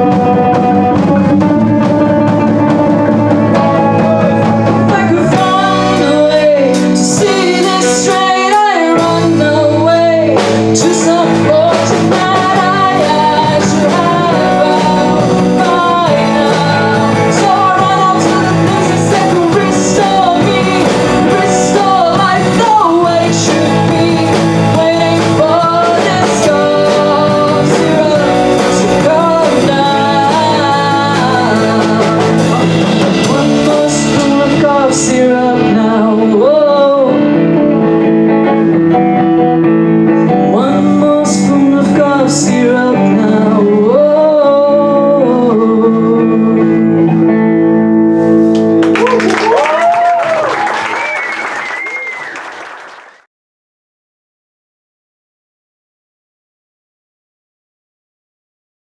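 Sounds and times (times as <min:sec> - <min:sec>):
person singing lead vocals: 0:00.0 - 0:47.9
live rock band: 0:00.0 - 0:53.2.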